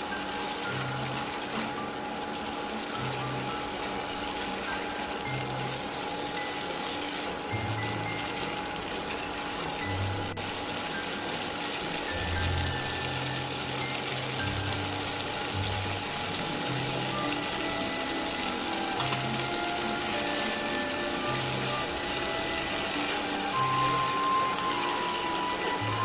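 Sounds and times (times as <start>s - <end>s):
food sizzling in hot oil: 0.0s - 26.0s.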